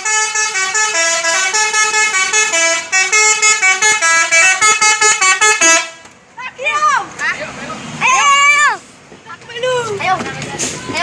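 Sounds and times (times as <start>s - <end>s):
musical air horn tune: 0.0s - 6.0s.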